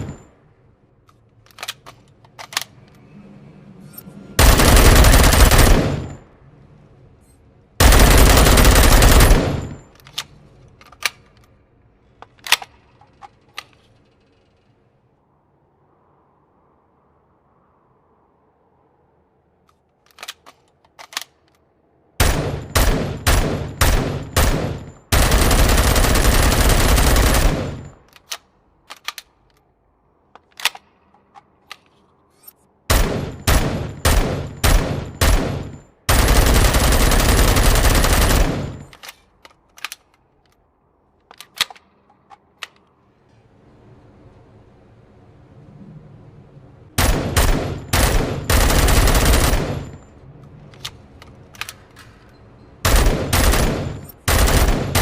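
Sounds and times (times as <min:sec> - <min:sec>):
full-automatic gunfire burst: 0:04.4 - 0:06.2, 0:07.8 - 0:09.8, 0:22.2 - 0:27.9, 0:32.9 - 0:38.9, 0:47.0 - 0:50.0, 0:52.8 - 0:55.0
rifle single shots: 0:32.9 - 0:36.4, 0:47.0 - 0:50.0, 0:52.8 - 0:55.0.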